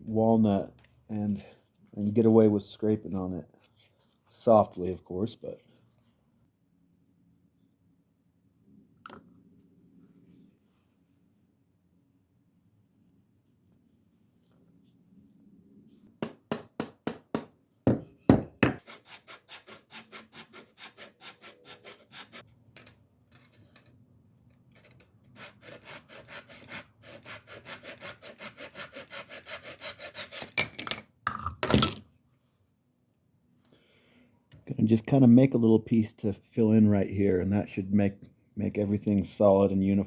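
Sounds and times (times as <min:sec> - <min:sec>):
sharp knocks on wood: 0:16.2 - 0:18.8.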